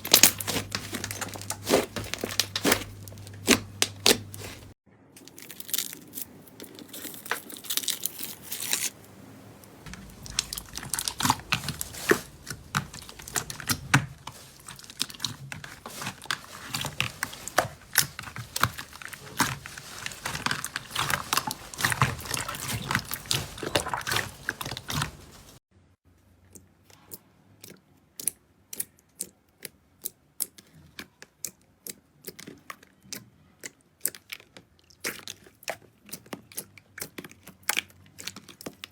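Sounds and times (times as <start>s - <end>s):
slime crackling and popping: 0.0s - 6.3s, 9.9s - 25.5s.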